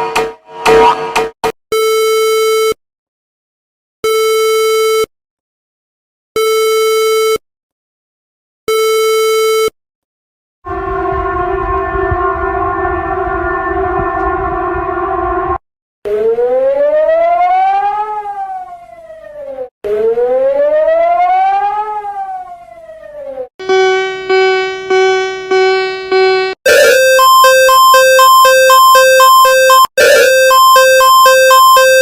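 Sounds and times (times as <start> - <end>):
harsh continuous alarm chord: 10.7 - 15.6, 23.6 - 32.0
buzzy beeps: 23.6 - 32.0
plucked electronic notes: 23.6 - 32.0.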